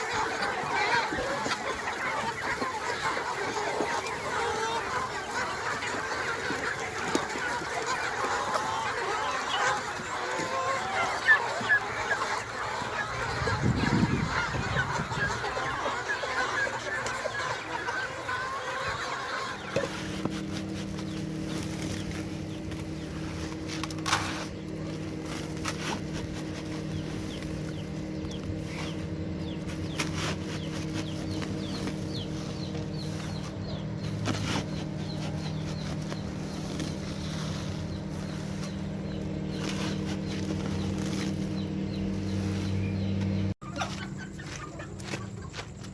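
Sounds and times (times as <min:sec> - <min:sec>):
chickens clucking: 0:00.0 - 0:45.9
steady low hum: 0:10.9 - 0:45.9.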